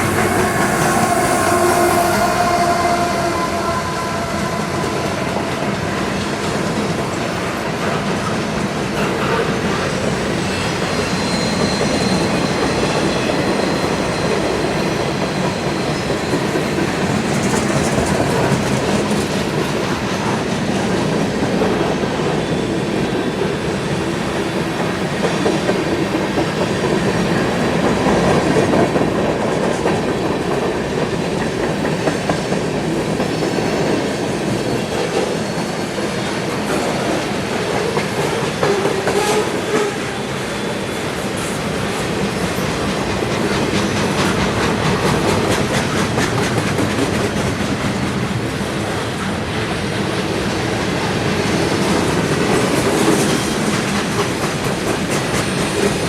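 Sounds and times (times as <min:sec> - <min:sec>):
faint high squeal: 0:00.0 - 0:06.5, 0:10.6 - 0:14.7
freight train wheels on rails: 0:00.0 - 0:56.0.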